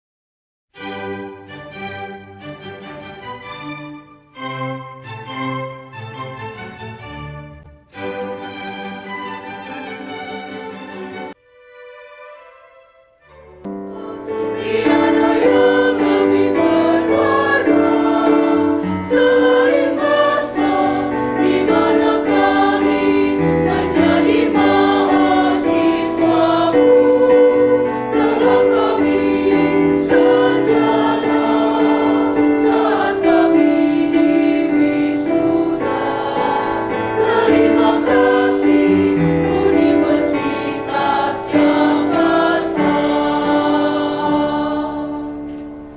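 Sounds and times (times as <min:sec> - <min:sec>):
musical accompaniment: 0:00.8 - 0:45.9
mixed choir singing a march: 0:13.7 - 0:45.5.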